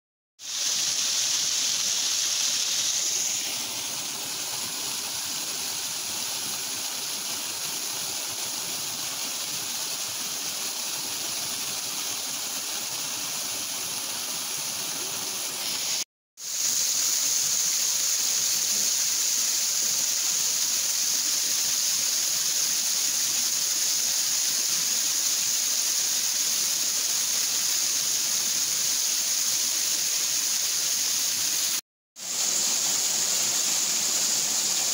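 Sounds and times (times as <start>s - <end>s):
waterfall rushing: 0.4s - 6.8s.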